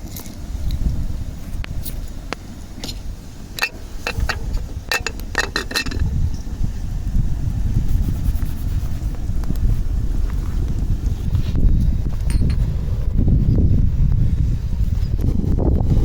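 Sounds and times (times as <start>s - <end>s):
wind buffeting microphone: 0.0s - 16.0s
sharp clicks and knocks: 3.6s - 6.1s.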